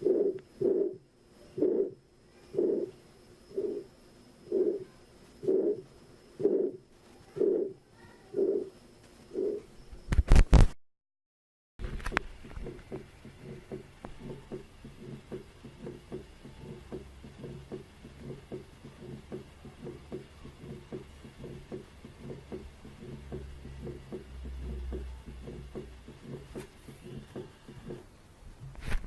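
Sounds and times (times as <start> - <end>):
steady low hum: 0.0 - 10.2, 11.8 - 29.0
soft low thumps: 11.8 - 28.8.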